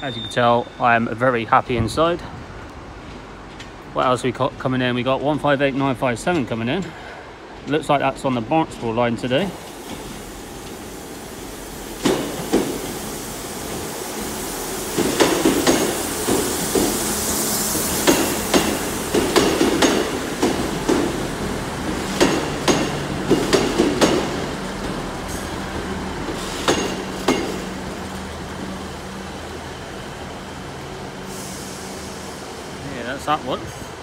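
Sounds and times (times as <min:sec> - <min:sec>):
low train engine hum: 0:00.0 - 0:34.0
train wheels clacking over rail joints: 0:12.0 - 0:13.0, 0:14.9 - 0:17.0, 0:17.9 - 0:21.2, 0:21.8 - 0:27.8.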